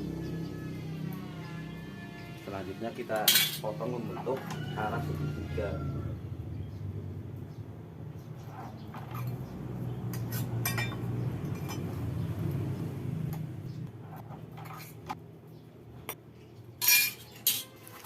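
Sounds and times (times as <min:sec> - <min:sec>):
hand tools clinking on steel plate: 0:03.2 - 0:03.7, 0:10.2 - 0:11.9, 0:16.8 - 0:18.0.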